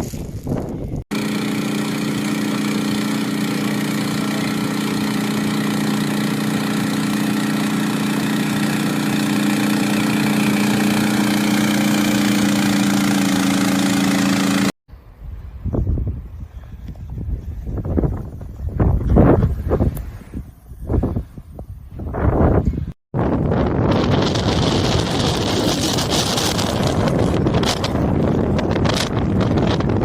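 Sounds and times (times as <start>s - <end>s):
engine droning hum: 1.1s - 14.7s.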